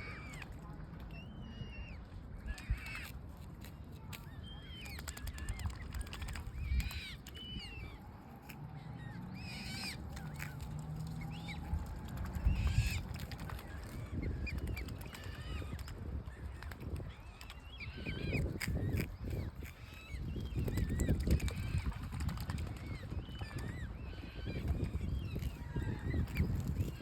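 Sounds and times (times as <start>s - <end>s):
low background rumble: 0.0s - 27.0s
waterbirds peeping and chirping: 0.0s - 27.0s.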